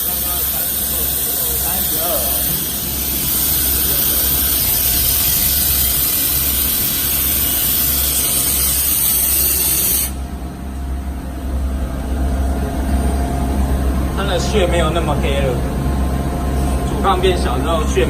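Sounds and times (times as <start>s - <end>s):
high-pitched metal cutting hiss: 0.0s - 10.2s
machine low hum: 0.0s - 18.0s.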